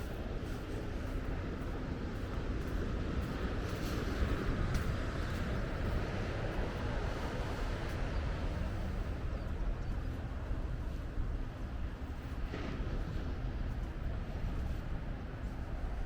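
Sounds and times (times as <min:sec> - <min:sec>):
low unsteady rumble: 0:00.0 - 0:16.0.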